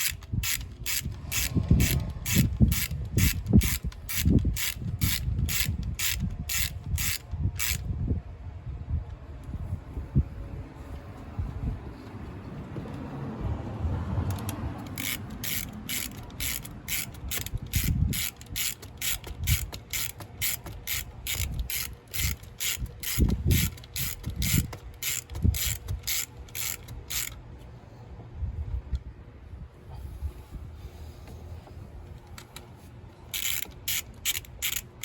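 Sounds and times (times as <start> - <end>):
ratchet wrench clicking: 0.0 - 7.9, 14.2 - 27.4, 33.2 - 35.0.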